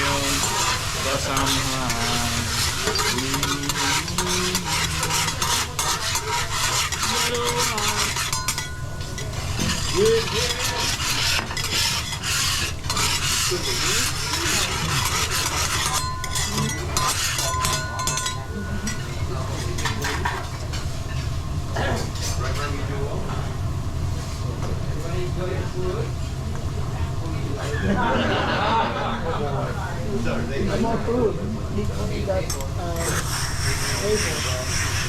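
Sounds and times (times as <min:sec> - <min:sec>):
metal spatulas scraping griddle: 0:00.0 - 0:20.5, 0:32.4 - 0:35.0
steady sizzle: 0:00.0 - 0:35.0.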